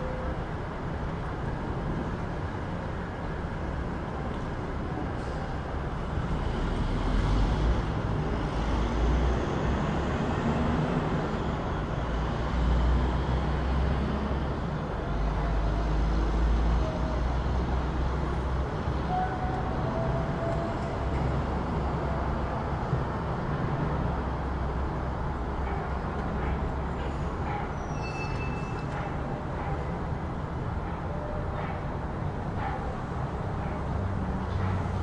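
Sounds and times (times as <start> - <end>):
passing vehicles rumbling: 0.0 - 35.0.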